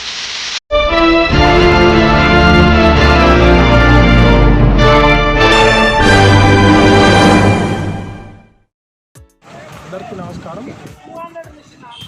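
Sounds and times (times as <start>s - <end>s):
organ-like chords music: 0.7s - 8.6s.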